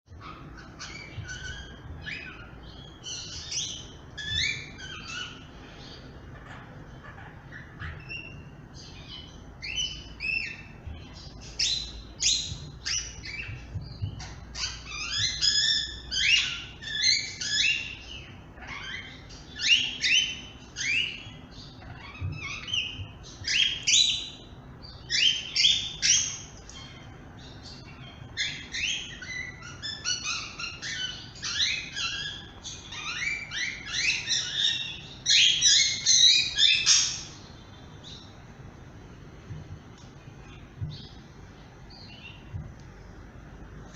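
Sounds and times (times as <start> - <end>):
parrot chirping shrilly: 28.4 - 37.4.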